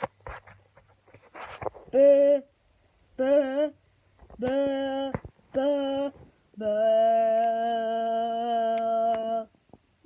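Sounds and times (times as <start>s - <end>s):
person humming held notes: 1.9s - 2.6s, 3.2s - 9.6s.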